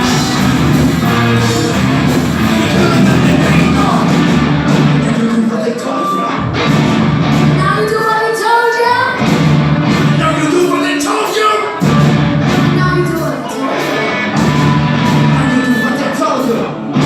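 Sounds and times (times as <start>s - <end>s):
live rock band playing: 0.0s - 17.0s
person singing: 2.4s - 4.3s.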